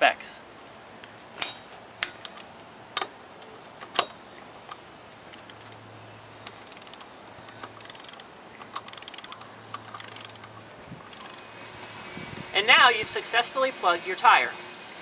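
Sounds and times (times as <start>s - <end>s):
torque wrench ratchet clicking: 5.3s - 5.8s, 6.4s - 10.5s, 11.1s - 11.4s.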